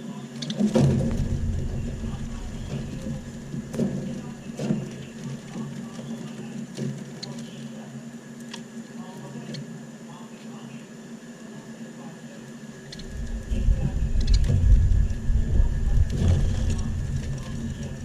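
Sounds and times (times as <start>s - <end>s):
low rumbling thump: 0.7s - 5.0s, 13.0s - 18.0s
budgerigars chattering: 1.6s - 4.5s, 12.9s - 18.0s.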